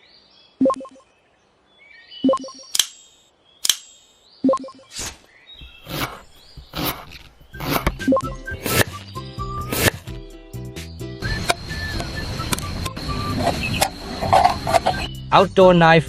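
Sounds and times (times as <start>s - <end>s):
birds chirping: 0.0s - 15.4s.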